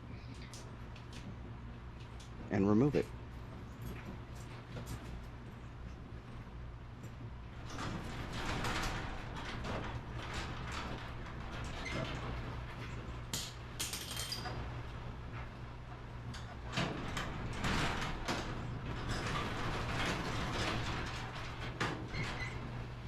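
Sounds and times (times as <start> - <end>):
metal rollers rattling in track: 7.0 - 23.0.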